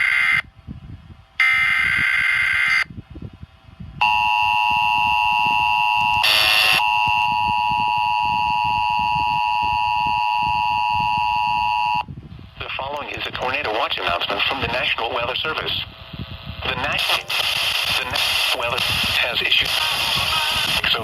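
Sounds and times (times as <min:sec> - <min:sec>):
two-tone attention signal: 0:04.0 - 0:12.0
static burst: 0:16.6 - 0:21.0.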